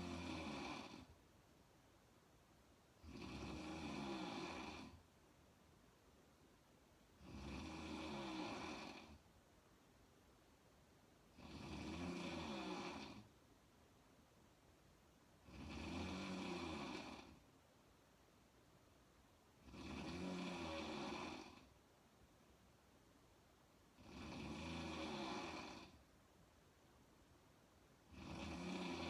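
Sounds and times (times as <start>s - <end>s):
woman snoring: 0.0s - 1.2s, 3.0s - 5.0s, 7.2s - 9.2s, 11.3s - 13.3s, 15.4s - 17.4s, 19.6s - 21.7s, 24.0s - 26.0s, 28.0s - 29.0s
quiet breaths: 0.0s - 29.0s.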